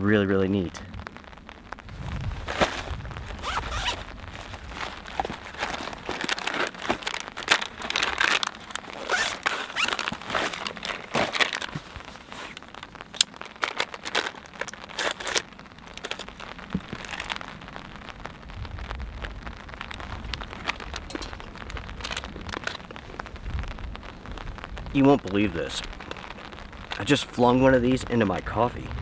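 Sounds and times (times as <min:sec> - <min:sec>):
crinkly material rustling: 0:01.0 - 0:28.9.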